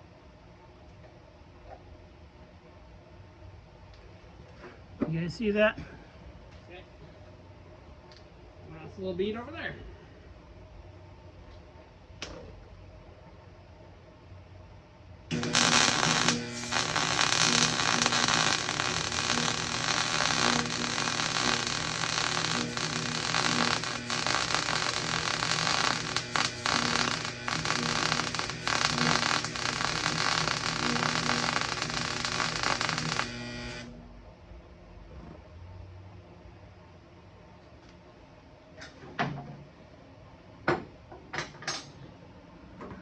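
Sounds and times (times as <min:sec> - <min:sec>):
electrical hum: 0:15.1 - 0:34.4
welding arc crackling: 0:15.3 - 0:34.0.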